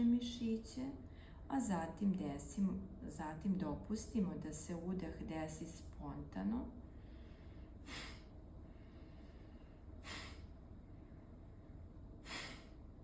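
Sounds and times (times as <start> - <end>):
quiet inhale: 1.0 - 1.5, 6.8 - 13.0
forceful nasal exhalations: 7.8 - 8.3, 10.0 - 10.5, 12.2 - 12.8.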